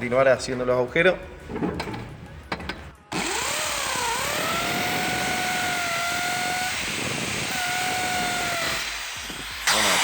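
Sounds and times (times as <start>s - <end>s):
electric drill whining: 3.1s - 10.0s.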